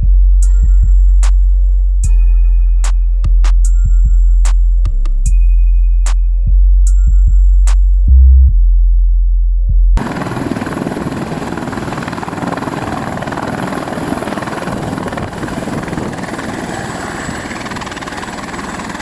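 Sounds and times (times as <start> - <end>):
helicopter rotor and turbine: 10.0 - 19.0.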